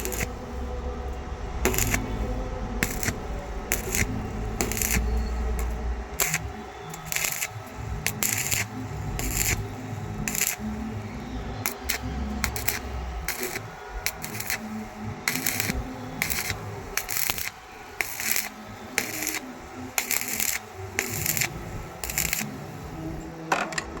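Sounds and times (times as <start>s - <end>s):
steady low hum: 0.0s - 23.4s
harsh rasping strokes on metal: 1.6s - 23.2s.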